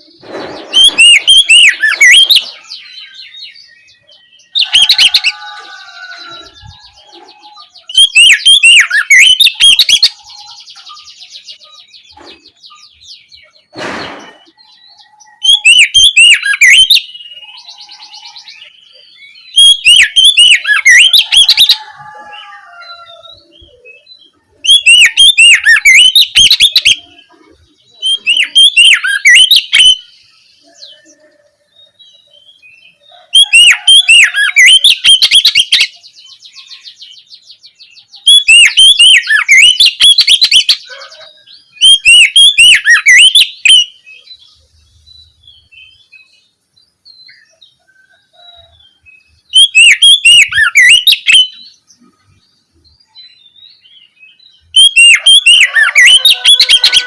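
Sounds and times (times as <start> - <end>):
buzzy chattering bird trills: 0.0 - 3.0, 6.3 - 12.6, 19.6 - 22.4, 24.6 - 31.4, 33.4 - 36.0, 38.2 - 43.9, 49.5 - 51.8, 54.7 - 57.0
bird singing whistled phrases: 0.6 - 4.0, 7.4 - 11.6, 15.4 - 18.5, 19.3 - 22.4, 24.7 - 27.2, 28.0 - 30.1, 33.4 - 35.9, 38.2 - 41.0, 41.8 - 44.0, 49.5 - 51.7, 54.8 - 57.0
short rushing noise: 13.7 - 14.5.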